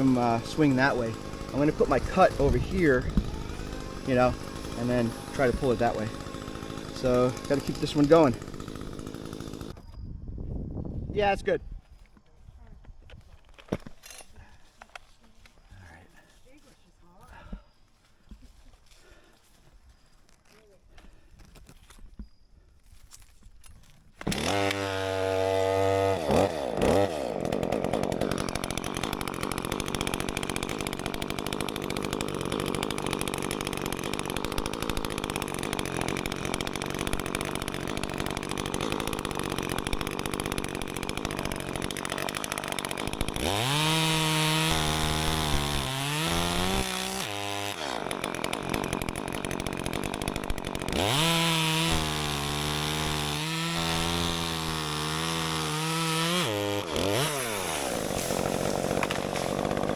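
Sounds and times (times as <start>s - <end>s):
chainsaw revving and cutting: 0.0s - 9.8s, 24.2s - 59.9s.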